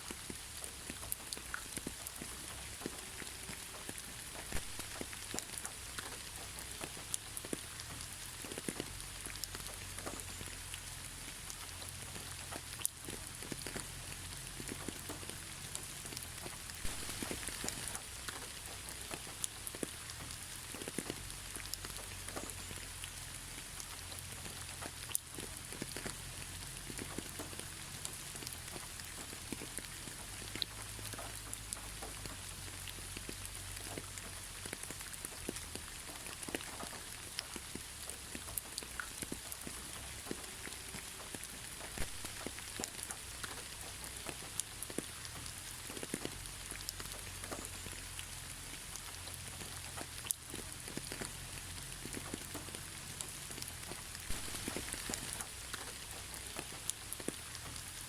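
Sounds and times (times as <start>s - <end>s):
raindrops ticking on surfaces: 0.0s - 58.0s
steady gentle rain: 0.0s - 58.0s.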